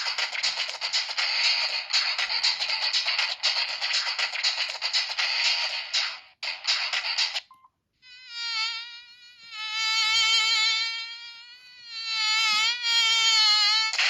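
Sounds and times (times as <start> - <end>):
buzzy wavering tone: 8.0 - 14.0.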